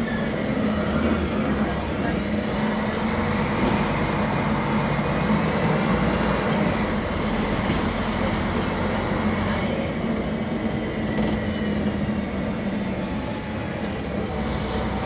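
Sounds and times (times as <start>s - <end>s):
bus diesel engine drone: 0.0s - 15.0s
road noise: 0.0s - 15.0s
rattling clicks from bus body: 3.2s - 5.3s, 7.4s - 8.2s, 10.6s - 12.1s.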